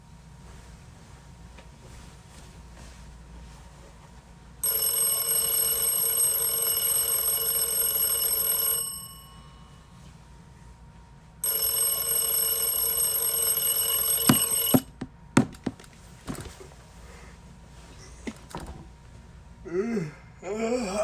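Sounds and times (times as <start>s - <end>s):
alarm clock bell ringing: 4.6s - 10.0s, 11.4s - 14.9s.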